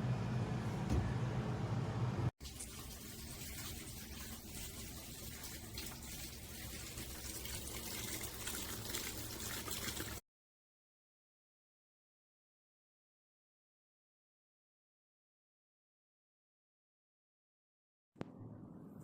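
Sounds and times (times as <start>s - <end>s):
water running from a tap: 2.4s - 10.2s.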